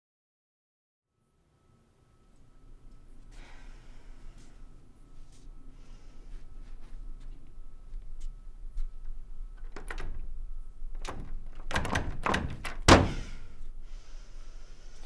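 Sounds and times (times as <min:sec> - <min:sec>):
door rattling and thumping: 0:09.6 - 0:10.3, 0:10.9 - 0:13.4.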